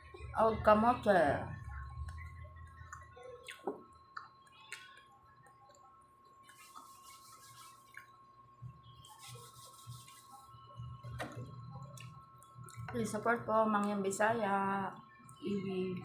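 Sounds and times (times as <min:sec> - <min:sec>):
mouth clicks and smacks: 0:02.1 - 0:05.8.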